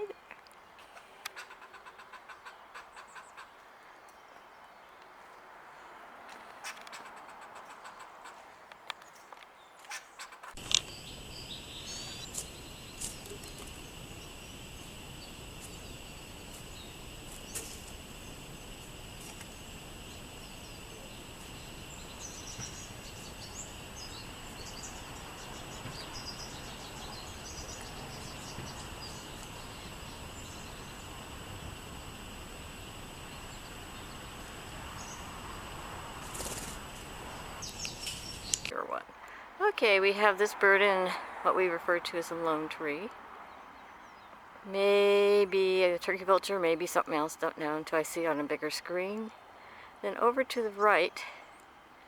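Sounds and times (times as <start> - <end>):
small birds chirping: 0.0 - 52.0.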